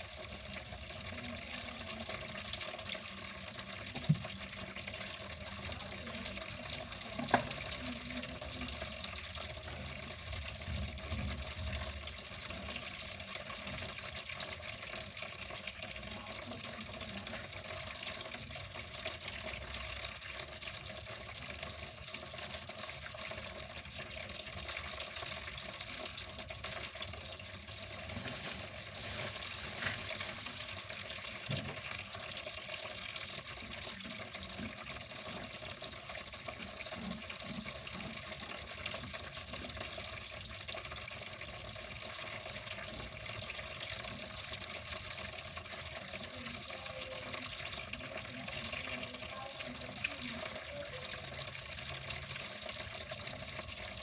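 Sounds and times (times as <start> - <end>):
water flowing and splashing: 9.9 - 54.0.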